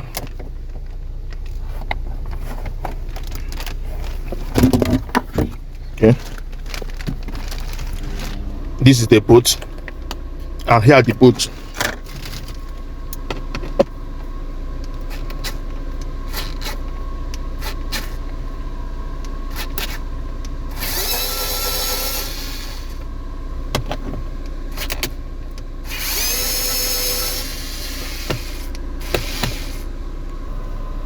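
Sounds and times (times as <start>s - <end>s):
power drill running: 20.7s - 23.0s, 25.8s - 29.9s.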